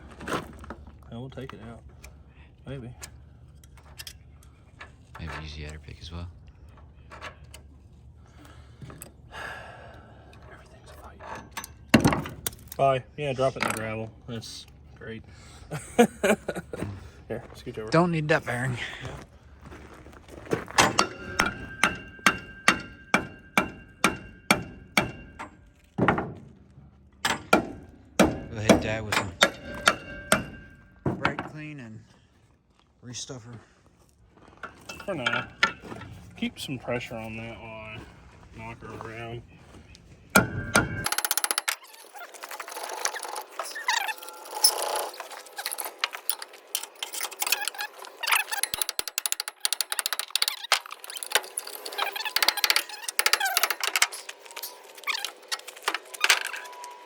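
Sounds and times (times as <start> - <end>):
light metallic clicks and rattles: 40.4 - 56.8.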